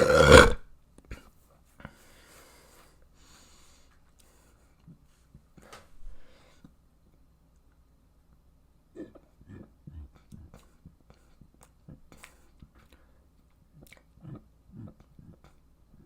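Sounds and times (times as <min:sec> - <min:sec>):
wet mouth clicks and smacks: 0:10.1 - 0:14.2.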